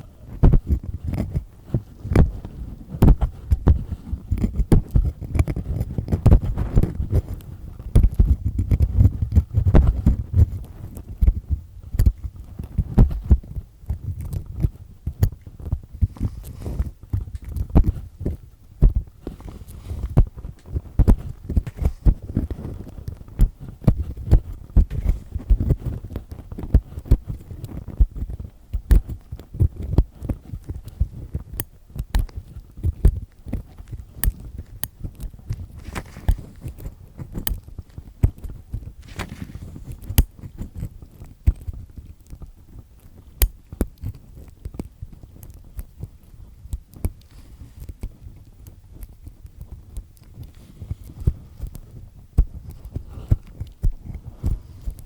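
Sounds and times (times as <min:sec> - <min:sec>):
dull low thumps: 0:00.0 - 0:13.6, 0:15.3 - 0:25.8
earpick crackly scratches: 0:00.0 - 0:55.0.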